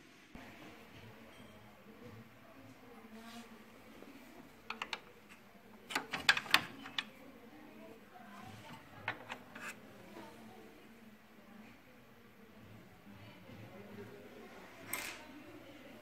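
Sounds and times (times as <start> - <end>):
printer parts clicking and knocking: 4.7 - 7.1, 8.6 - 9.8.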